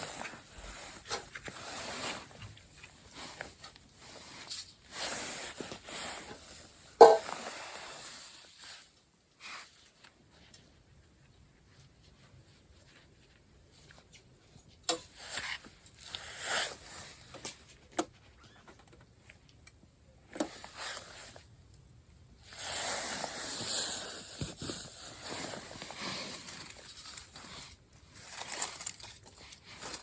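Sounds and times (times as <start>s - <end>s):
rustling of gear or fabric: 0.0s - 10.4s, 22.4s - 30.0s.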